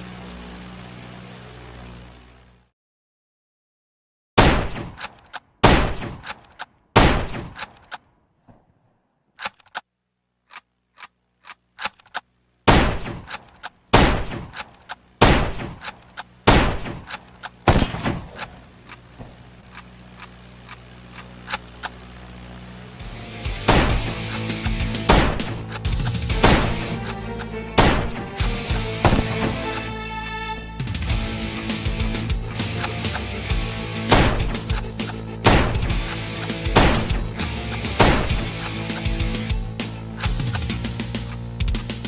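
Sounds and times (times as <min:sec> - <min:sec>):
rifle shots: 0:04.4 - 0:08.0, 0:12.6 - 0:21.9, 0:23.5 - 0:29.8, 0:31.5 - 0:39.2.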